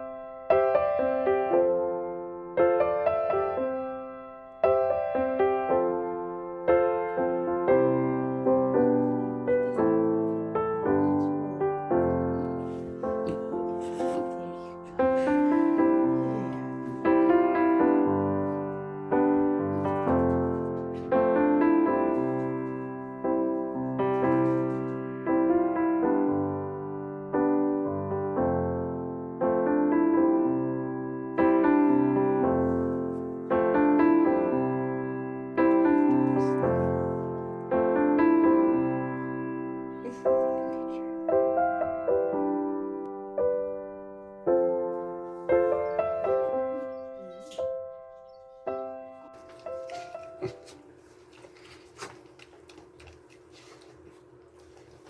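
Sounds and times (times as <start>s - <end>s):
slow solo piano: 0.0s - 51.3s.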